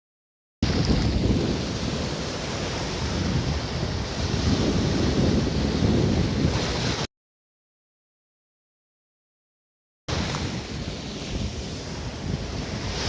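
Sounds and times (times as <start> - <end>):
waves washing onto stony beach: 0.6 - 7.1, 10.1 - 13.0
wind buffeting microphone: 0.6 - 7.1, 10.1 - 13.0.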